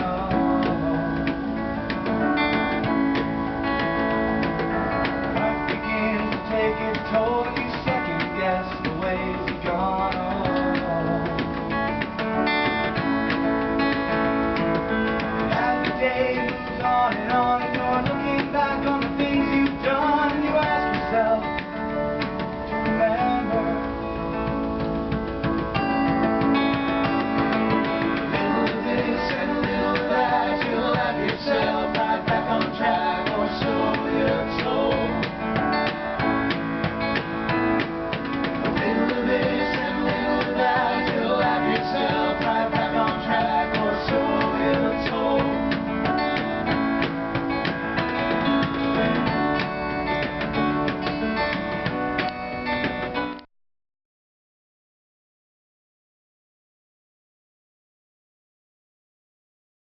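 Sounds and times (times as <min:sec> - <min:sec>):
strummed acoustic guitar: 0:00.0 - 0:53.4.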